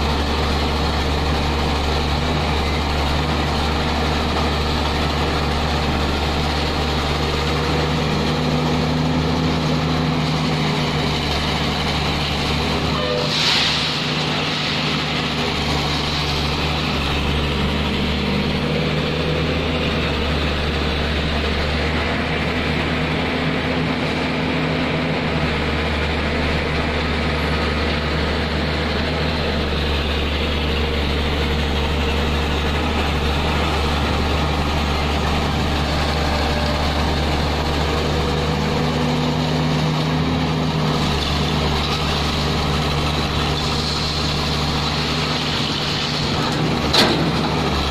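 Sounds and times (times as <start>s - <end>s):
heavy diesel engine running: 0.0s - 47.9s.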